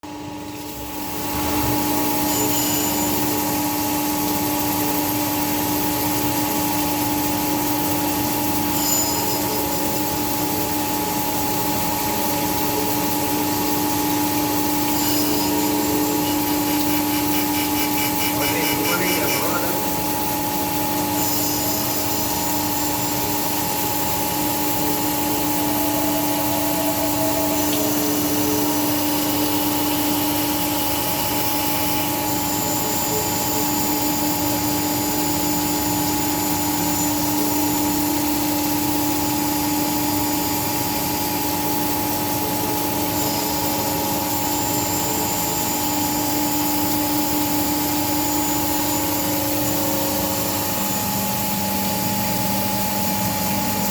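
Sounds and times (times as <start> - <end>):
grinding machine hum and hiss: 0.1 - 53.9
thin high whine: 1.0 - 4.2, 8.5 - 10.8, 12.2 - 33.5.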